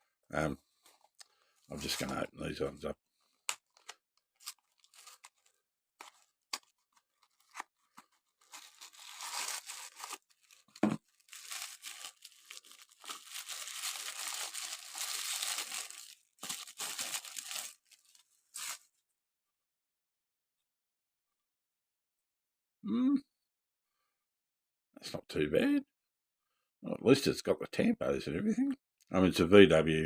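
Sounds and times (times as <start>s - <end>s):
cardboard box tearing: 7.4s - 10.6s.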